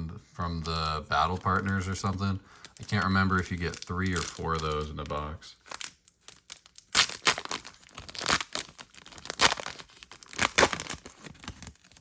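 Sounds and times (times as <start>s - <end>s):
foil wrapper crinkling and tearing: 0.4s - 12.0s.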